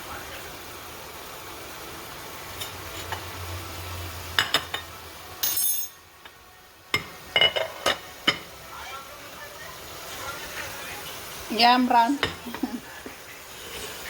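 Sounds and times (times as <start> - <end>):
onion and tomato sizzling in pot: 0.0 - 14.0
spoon clinking against pot: 5.4 - 6.0.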